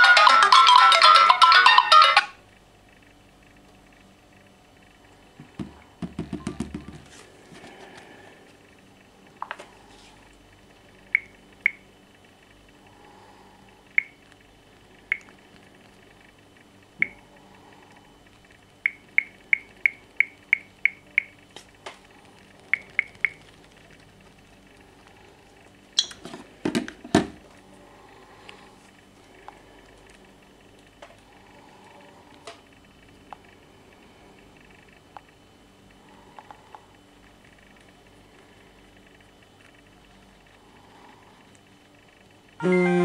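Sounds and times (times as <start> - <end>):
taps on a smartphone: 5.5 - 7.0.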